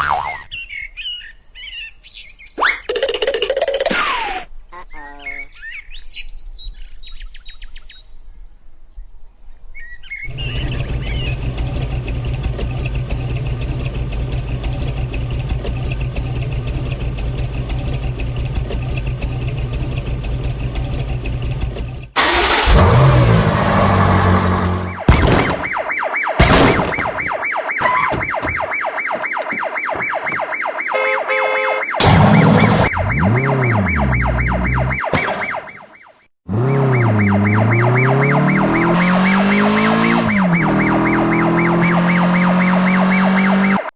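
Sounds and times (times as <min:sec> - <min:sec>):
warbling siren tone: 0:24.8 - 0:43.9
cartoon engine drone: 0:31.0 - 0:35.1.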